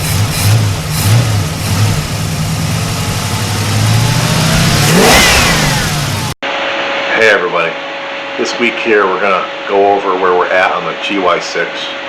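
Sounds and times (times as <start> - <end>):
engine idling and revving: 0.0 - 6.4.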